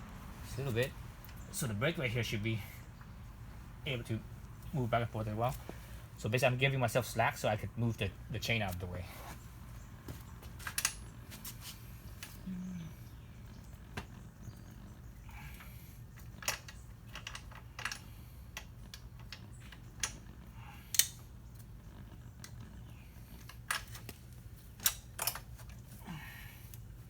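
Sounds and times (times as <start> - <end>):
steady low hum: 0.0 - 27.0
metal parts clicking and knocking: 16.4 - 20.3, 24.8 - 25.5.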